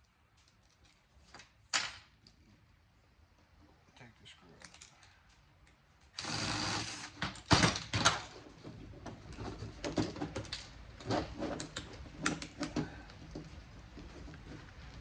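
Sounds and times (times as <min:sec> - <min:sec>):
cordless drill whirring: 0:06.2 - 0:07.2.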